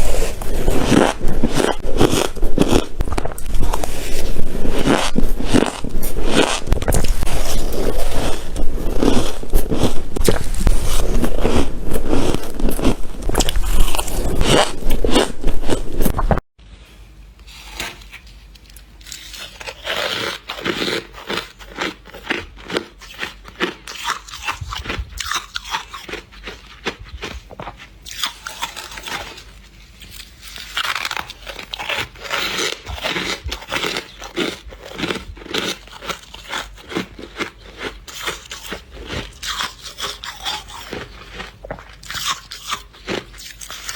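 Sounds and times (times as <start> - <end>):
frost being chewed crunching: 0.0 - 16.4, 18.5 - 43.9.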